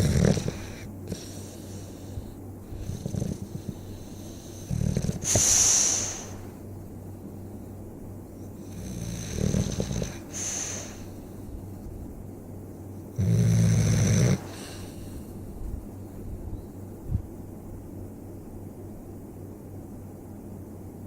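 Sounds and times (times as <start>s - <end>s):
person snoring: 0.0s - 1.6s, 2.8s - 3.7s, 4.4s - 6.4s, 8.7s - 11.0s, 13.2s - 15.0s.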